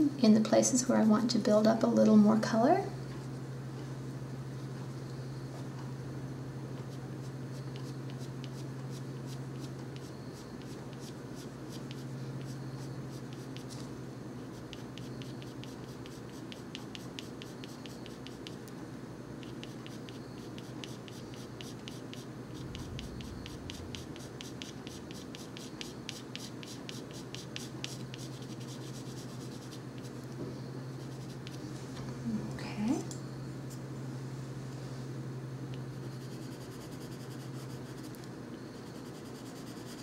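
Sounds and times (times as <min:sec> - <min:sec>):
steady low hum: 0:00.0 - 0:40.0
colored pencil scratching on paper: 0:07.2 - 0:13.8, 0:14.5 - 0:18.6, 0:19.4 - 0:30.2, 0:31.0 - 0:31.6, 0:36.0 - 0:38.2, 0:38.8 - 0:40.0.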